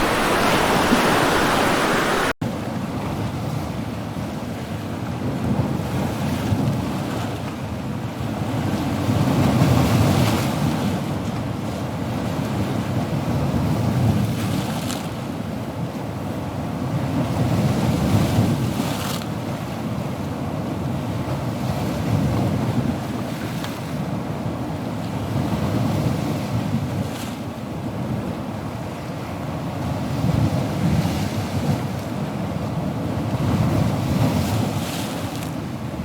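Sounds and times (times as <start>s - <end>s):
wind buffeting microphone: 0.0s - 2.3s
breaking surf hiss: 0.0s - 2.4s
sea waves washing on shore: 0.0s - 2.4s.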